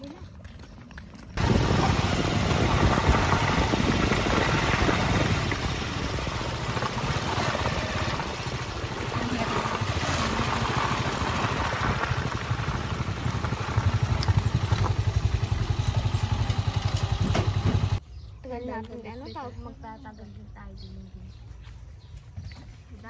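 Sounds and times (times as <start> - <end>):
small motorcycle engine running: 0.0 - 18.0.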